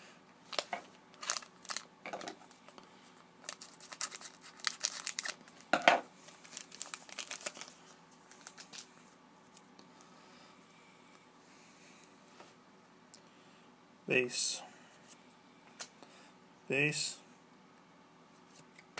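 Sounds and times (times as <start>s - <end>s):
plastic wrapper tearing and crinkling: 0.5s - 1.9s, 3.4s - 5.7s, 6.3s - 8.9s.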